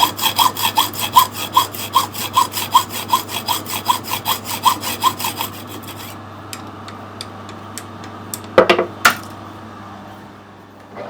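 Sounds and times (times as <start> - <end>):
hand saw strokes: 0.0 - 6.2
steady low hum: 0.0 - 10.9.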